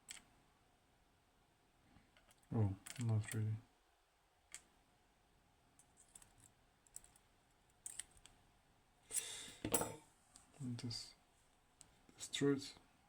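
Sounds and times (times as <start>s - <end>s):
small metal lock parts clicking: 2.2s - 3.1s, 7.8s - 8.3s.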